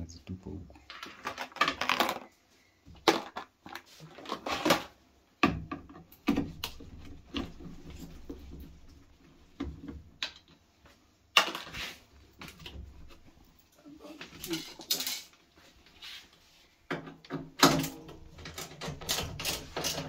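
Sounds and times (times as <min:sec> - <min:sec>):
small parts and tools clattering: 0:00.8 - 0:05.0, 0:11.3 - 0:16.0, 0:16.9 - 0:20.0.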